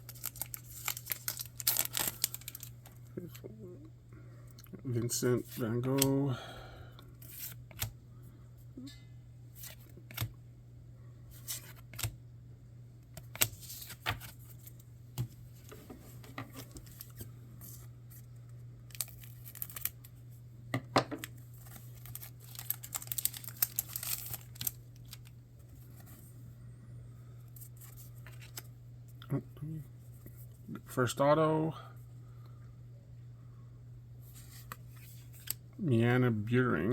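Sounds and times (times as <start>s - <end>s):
packaging crinkling and tearing: 0.0s - 3.3s, 18.9s - 20.1s, 21.2s - 26.0s
cards handled clicks and rustles: 0.0s - 3.4s, 5.4s - 6.3s, 7.0s - 8.0s, 9.6s - 10.4s, 11.3s - 12.2s, 13.1s - 18.3s, 18.9s - 20.0s, 20.8s - 26.2s, 27.6s - 28.7s, 34.3s - 35.6s
steady low hum: 0.0s - 36.9s.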